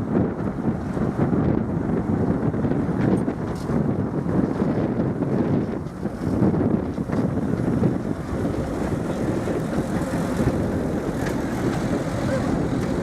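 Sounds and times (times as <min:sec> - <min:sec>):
wind buffeting microphone: 0:00.0 - 0:13.0
miniature train rumbling: 0:00.4 - 0:13.0.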